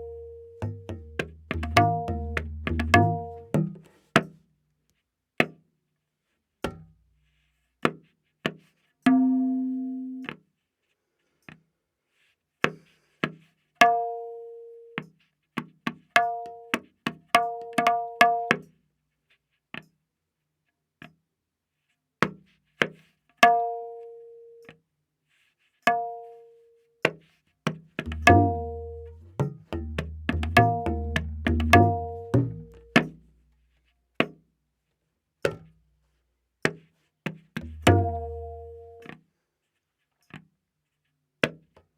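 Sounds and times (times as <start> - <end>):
tabla strokes: 0.0 - 4.4, 6.6 - 10.4, 27.0 - 34.4, 35.4 - 39.2.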